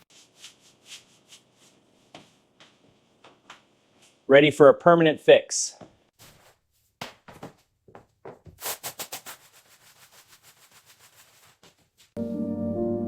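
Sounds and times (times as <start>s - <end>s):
soft music with ringing tones: 12.2s - 13.0s.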